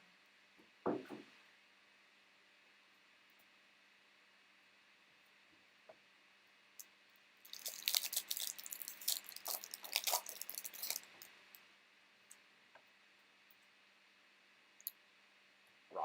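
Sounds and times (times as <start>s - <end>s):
foil wrapper tearing and crinkling: 7.5s - 11.3s.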